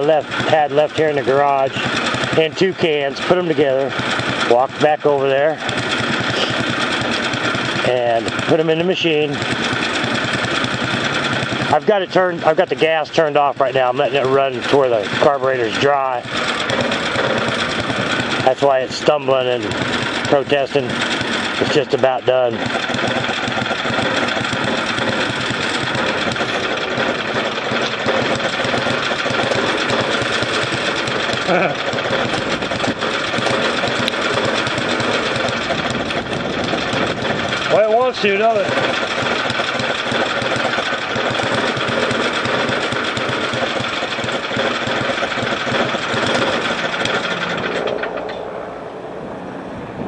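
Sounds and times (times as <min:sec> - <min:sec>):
engine stumbling: 0:00.0 - 0:50.0.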